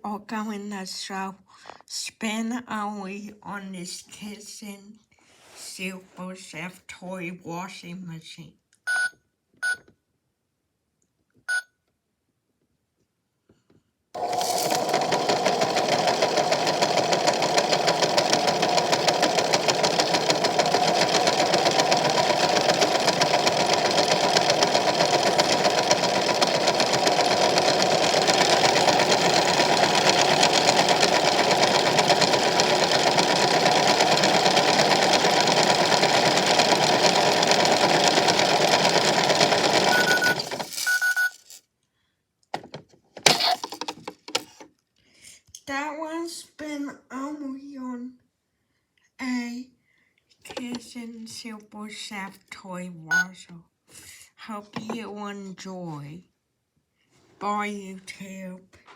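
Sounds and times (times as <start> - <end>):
short beep: 8.9 - 9.8, 11.5 - 11.7, 39.9 - 41.4, 53.1 - 53.4
toy washing machine motor buzzing: 14.2 - 41.6, 43.2 - 44.4.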